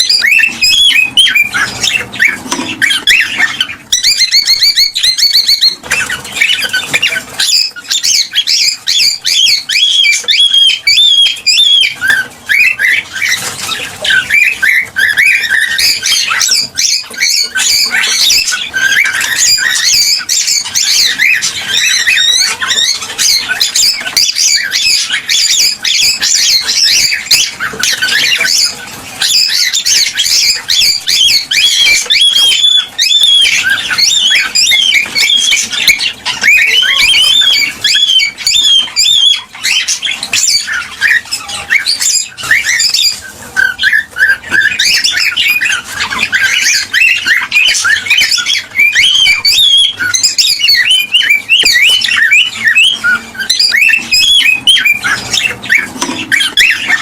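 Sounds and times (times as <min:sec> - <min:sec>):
cockatiels chirping and squawking: 0:00.0 - 0:57.0.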